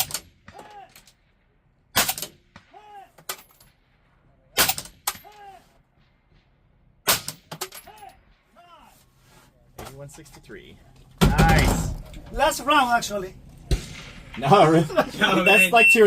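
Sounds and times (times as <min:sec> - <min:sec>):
suppressed rifle shots: 0:02.0 - 0:02.7.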